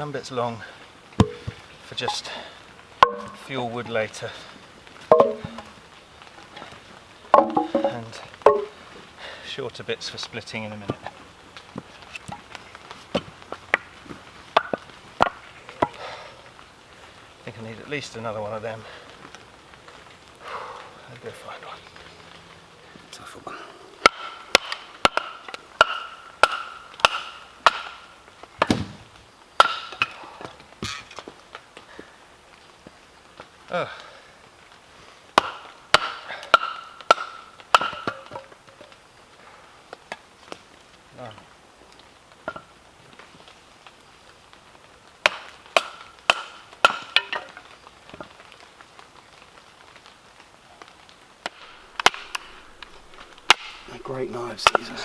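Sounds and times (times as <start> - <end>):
wood cracking: 1.1 - 9.1, 44.5 - 55.0
axe strikes into wood: 1.2 - 2.2, 3.0 - 3.4, 5.1 - 5.7
knife splitting firewood: 1.2 - 4.2, 5.1 - 5.8, 51.6 - 55.0.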